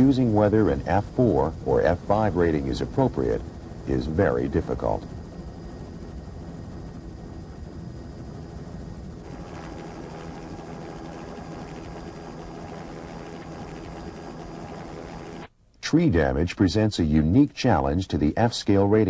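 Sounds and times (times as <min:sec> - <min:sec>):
engine drone: 0:00.0 - 0:15.5.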